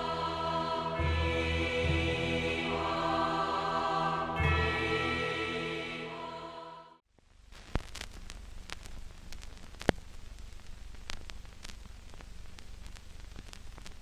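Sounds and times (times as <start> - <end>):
crackling static: 7.1 - 14.0
clicks and pops: 7.5 - 14.0.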